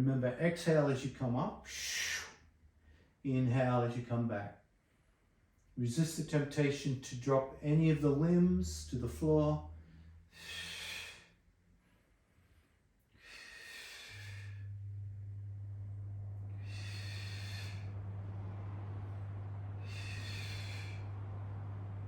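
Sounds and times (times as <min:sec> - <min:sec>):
low electrical hum: 0:05.5 - 0:22.0
person breathing heavily: 0:09.7 - 0:22.0.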